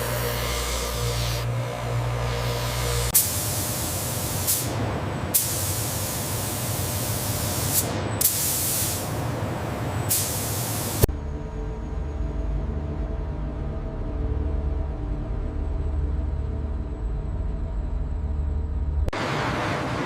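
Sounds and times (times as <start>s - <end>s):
high-pressure spray jet hissing: 0.0s - 1.5s, 2.2s - 11.1s.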